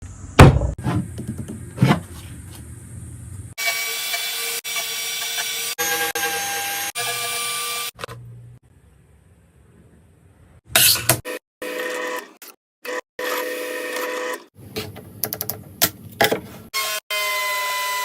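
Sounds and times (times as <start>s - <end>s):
power tool cutting wood: 3.6s - 8.1s, 16.7s - 18.0s.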